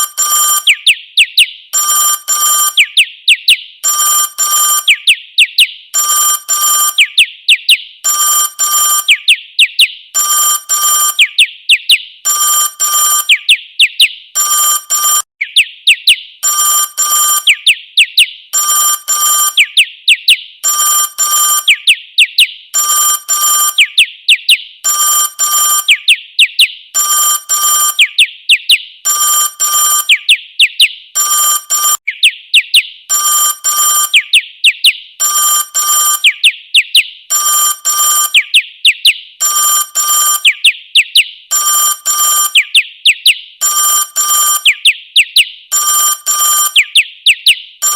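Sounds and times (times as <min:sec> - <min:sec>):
bell-like ringtone rings: 0:00.0 - 0:00.7, 0:01.8 - 0:02.8, 0:03.8 - 0:04.9, 0:06.0 - 0:07.0, 0:08.1 - 0:09.1, 0:10.2 - 0:11.2, 0:12.3 - 0:13.3, 0:14.4 - 0:15.3, 0:16.4 - 0:17.5, 0:18.6 - 0:19.6, 0:20.6 - 0:21.7, 0:22.8 - 0:23.8, 0:24.9 - 0:25.9, 0:27.0 - 0:28.0, 0:29.1 - 0:30.1, 0:31.2 - 0:32.0, 0:33.1 - 0:34.2, 0:35.2 - 0:36.2, 0:37.3 - 0:38.4, 0:39.4 - 0:40.4, 0:41.5 - 0:42.6, 0:43.6 - 0:44.7, 0:45.8 - 0:46.8
chirping whistles: 0:00.0 - 0:01.6, 0:04.7 - 0:05.8, 0:11.0 - 0:12.1, 0:15.0 - 0:16.2, 0:17.2 - 0:18.3, 0:21.5 - 0:22.6, 0:27.8 - 0:28.8, 0:31.8 - 0:33.0, 0:46.6 - 0:47.9.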